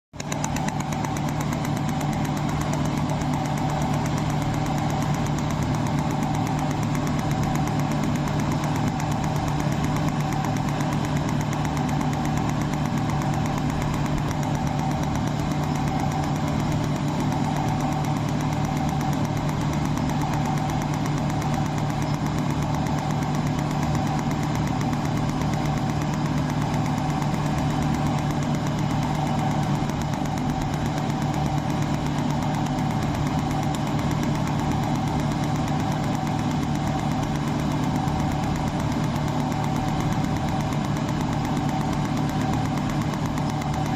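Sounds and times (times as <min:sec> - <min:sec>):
welding machine humming: 0:00.2 - 0:43.9.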